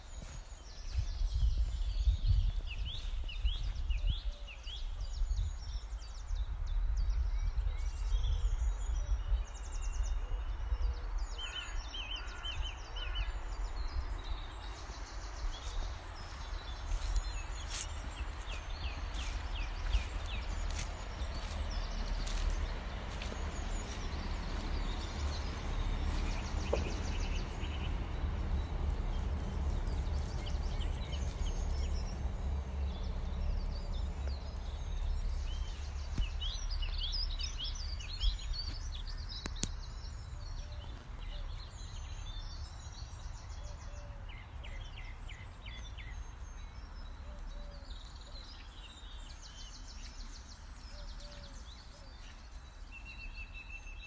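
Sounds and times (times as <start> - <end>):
steady low rumble: 0.0 - 11.4, 12.8 - 43.6
small birds chirping: 0.0 - 54.0.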